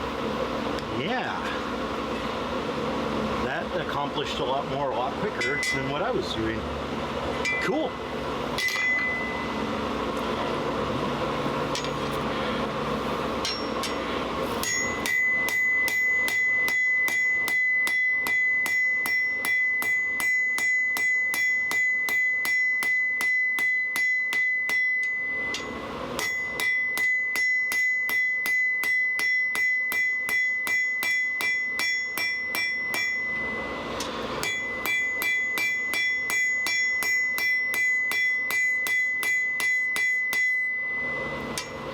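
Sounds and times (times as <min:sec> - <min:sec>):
hammer striking anvil: 0:05.3 - 0:06.0, 0:07.4 - 0:07.8, 0:08.6 - 0:09.5, 0:11.7 - 0:12.2, 0:13.4 - 0:41.9.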